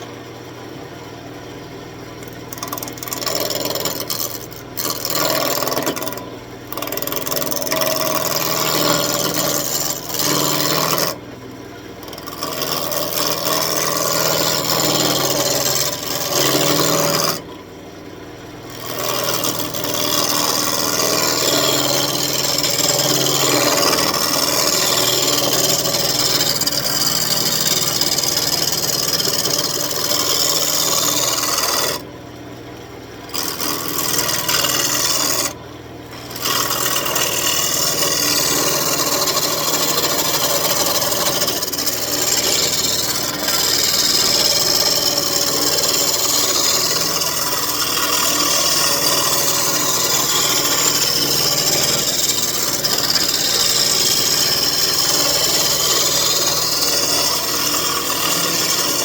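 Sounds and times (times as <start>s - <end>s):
lathe motor humming: 2.2s - 11.2s, 12.0s - 17.6s, 18.6s - 32.1s, 33.2s - 59.0s
lathe tool scraping wood: 2.2s - 11.2s, 12.0s - 17.6s, 18.6s - 32.1s, 33.2s - 59.0s.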